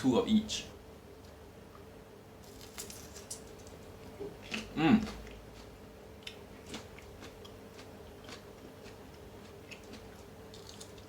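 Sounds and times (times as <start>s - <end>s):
low room hum: 0.0s - 11.0s
person chewing crunchy food: 4.0s - 11.0s.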